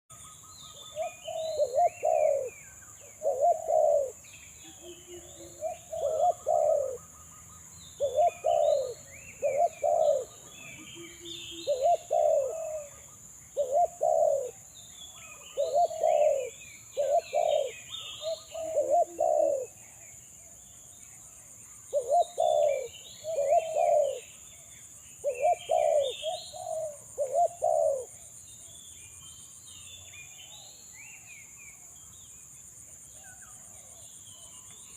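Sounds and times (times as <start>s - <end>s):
high insect hiss: 0.1s - 34.9s
small birds chirping: 0.1s - 34.9s
dove cooing: 0.7s - 7.2s, 8.0s - 14.6s, 15.2s - 19.8s, 21.9s - 24.3s, 25.2s - 28.2s.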